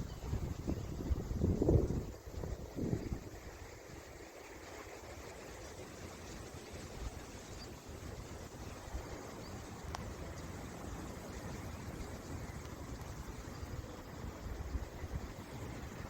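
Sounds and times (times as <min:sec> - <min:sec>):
faint click: 0:09.8 - 0:10.1.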